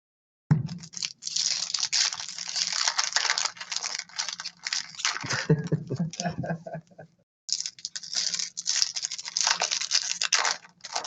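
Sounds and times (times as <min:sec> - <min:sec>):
foil wrappers crinkling and tearing: 0:00.7 - 0:05.6, 0:07.5 - 0:11.0.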